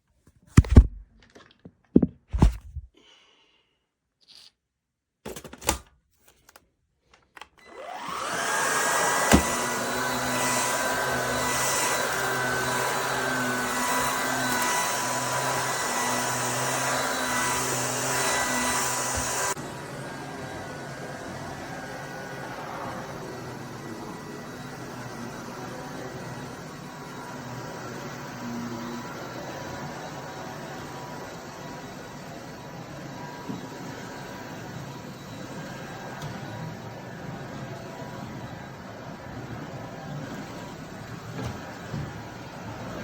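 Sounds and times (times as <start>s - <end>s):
stick vacuum motor whining: 7.4s - 38.6s.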